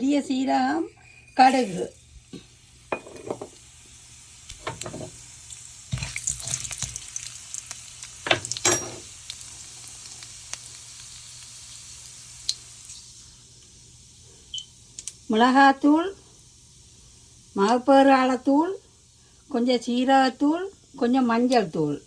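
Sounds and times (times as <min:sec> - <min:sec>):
seeds sizzling in hot oil: 0:00.0 - 0:22.0
utensil knocking against pan: 0:03.0 - 0:03.5.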